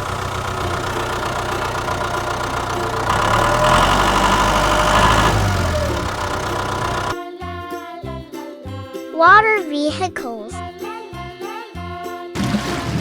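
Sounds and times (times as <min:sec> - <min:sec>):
hay baler engine running: 0:00.0 - 0:07.1.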